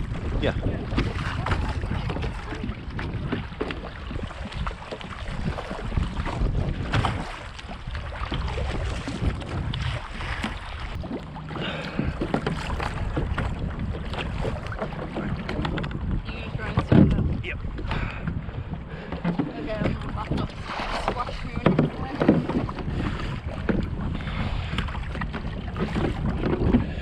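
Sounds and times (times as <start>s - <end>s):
paddle splashes: 0.0s - 27.0s
water slapping: 0.0s - 27.0s
wind buffeting microphone: 0.0s - 27.0s.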